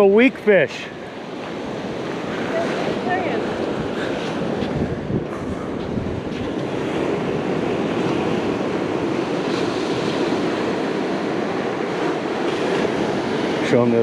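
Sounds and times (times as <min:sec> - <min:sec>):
ocean surf washing on beach: 0:00.0 - 0:14.0
wind buffeting microphone: 0:00.8 - 0:14.0.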